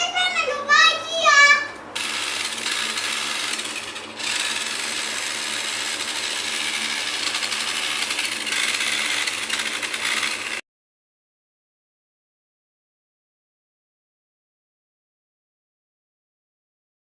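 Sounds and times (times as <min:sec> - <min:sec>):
toy truck motor whirring: 0:02.0 - 0:10.6.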